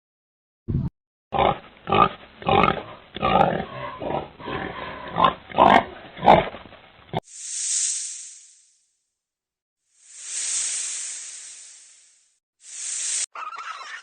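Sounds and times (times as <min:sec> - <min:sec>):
animal grunting: 0:01.4 - 0:07.2.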